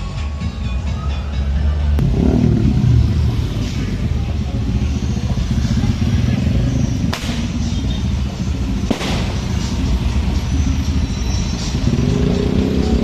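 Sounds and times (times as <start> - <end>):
motor vehicles rumbling: 0.0 - 13.0
music with held notes: 0.0 - 13.0
firecracker bang: 7.1 - 7.7, 8.9 - 9.8.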